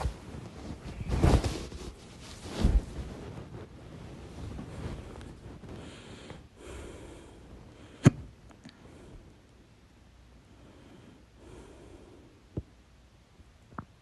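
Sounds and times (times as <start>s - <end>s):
soft breathing: 4.4s - 9.5s, 10.4s - 12.6s.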